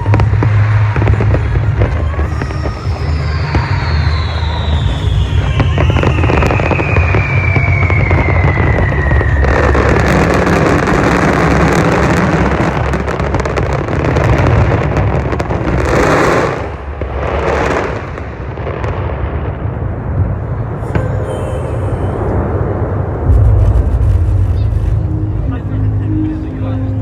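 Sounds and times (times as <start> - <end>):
firework whistle: 0.0 - 18.5
firework bursts: 0.0 - 25.1
fireworks crackling: 0.0 - 25.7.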